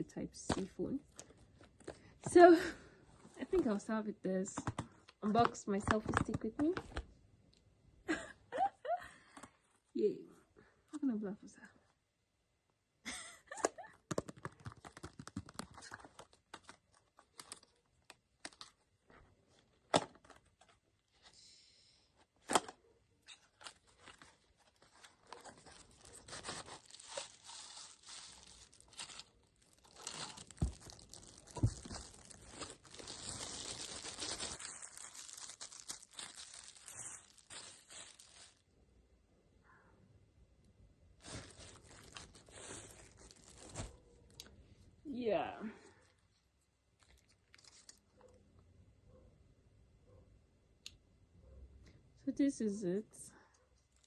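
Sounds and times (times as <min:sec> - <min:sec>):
packaging torn and crinkled: 0:14.6 - 0:18.9, 0:23.3 - 0:38.6, 0:41.2 - 0:44.4, 0:47.0 - 0:48.3.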